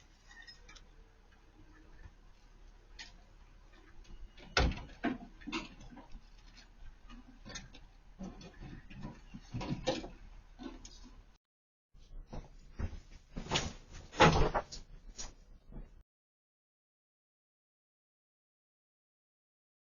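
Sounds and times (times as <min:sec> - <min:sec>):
faint low hum: 0:00.0 - 0:11.4.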